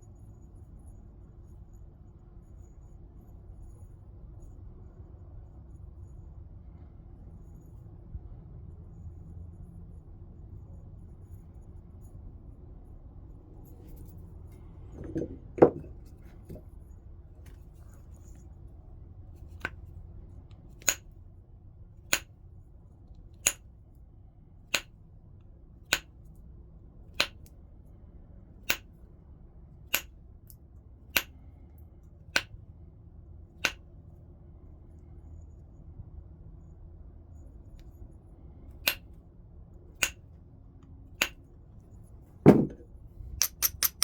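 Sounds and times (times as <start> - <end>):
heavy knock on stone: 15.0 - 15.9, 42.5 - 42.8.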